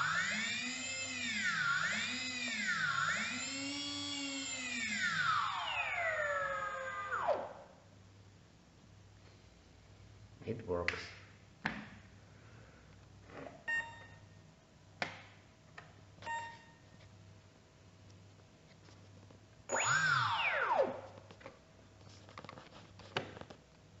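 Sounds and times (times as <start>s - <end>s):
electric motor spinning up: 0.0s - 7.4s, 19.7s - 20.9s.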